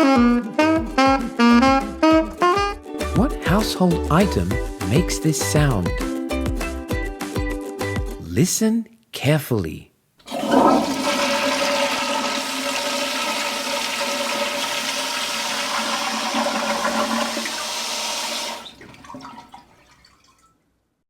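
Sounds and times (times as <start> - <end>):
toilet flushing: 10.2 - 20.5.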